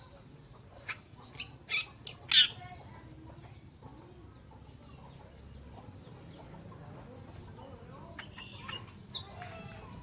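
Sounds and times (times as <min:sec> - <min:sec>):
warbler calling harsh notes: 0:00.8 - 0:02.6.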